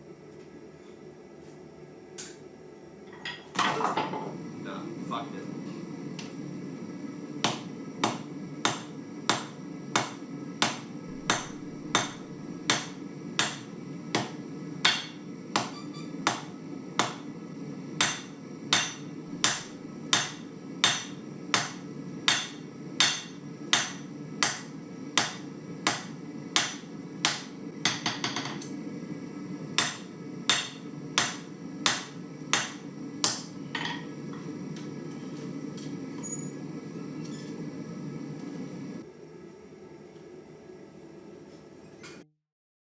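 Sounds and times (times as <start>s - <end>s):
hammer striking steel on anvil: 7.4s - 17.3s, 18.0s - 28.7s, 29.8s - 34.1s.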